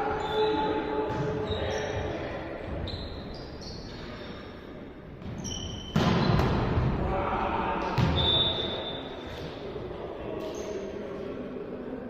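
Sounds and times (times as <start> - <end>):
shoes squeaking on court: 0.2 - 4.4, 5.2 - 6.5
volleyball struck and bouncing: 5.2 - 6.9.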